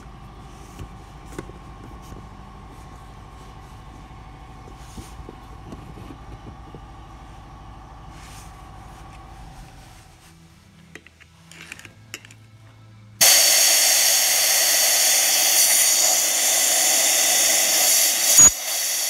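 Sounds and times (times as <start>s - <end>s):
compressed air running: 0.0s - 10.4s, 13.2s - 19.0s.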